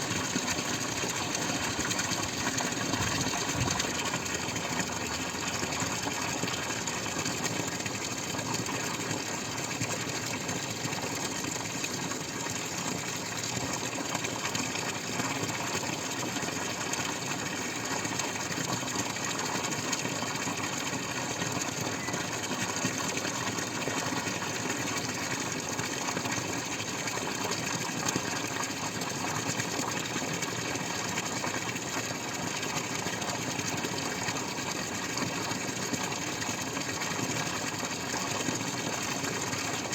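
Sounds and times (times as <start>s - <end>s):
water running and splashing: 0.0s - 39.9s.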